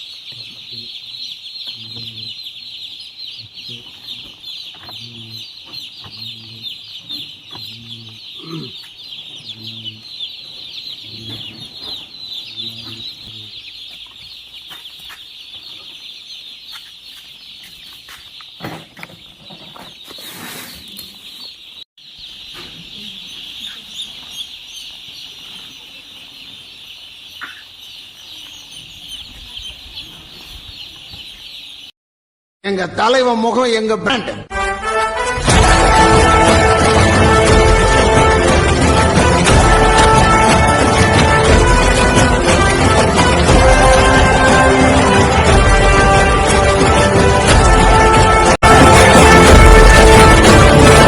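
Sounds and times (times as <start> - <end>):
chickens chattering: 0.0 - 31.9, 35.8 - 51.0.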